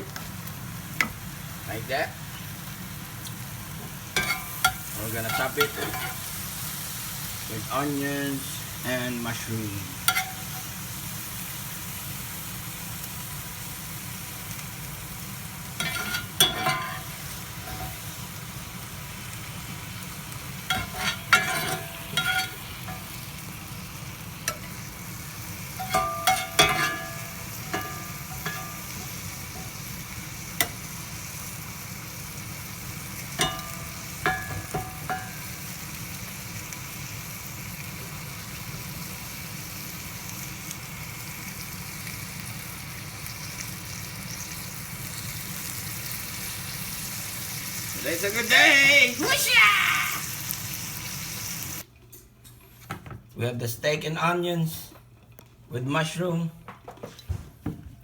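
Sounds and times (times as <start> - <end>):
steak sizzling on hot plate: 0.0 - 51.9
metal utensil clinking on plate: 15.8 - 17.1, 20.7 - 23.1, 25.8 - 29.8, 33.4 - 35.4.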